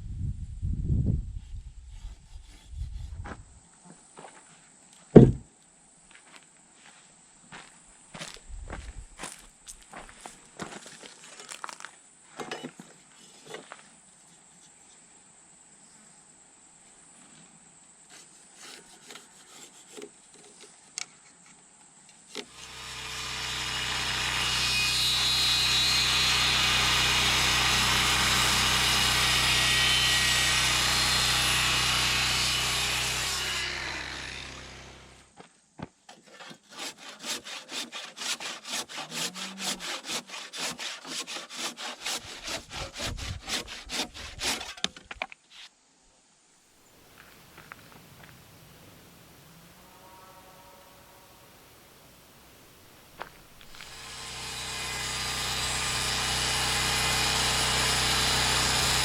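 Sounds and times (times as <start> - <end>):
handsaw cutting wood: 1.9 - 3.3, 18.1 - 20.6, 22.4 - 35.3, 36.2 - 44.9, 53.2 - 59.0
power saw cutting wood: 22.4 - 35.3, 36.3 - 44.9, 53.2 - 59.0.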